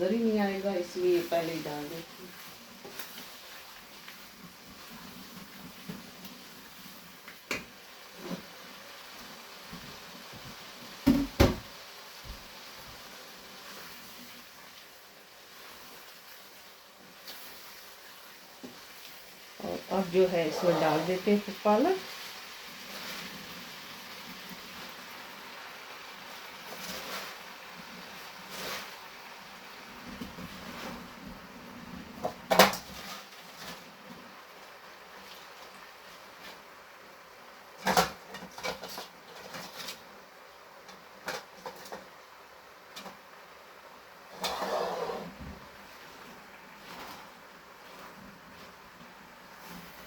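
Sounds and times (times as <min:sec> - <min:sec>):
food sizzling in a pot: 0:00.0 - 0:50.0
kitchen knocks: 0:11.0 - 0:11.7.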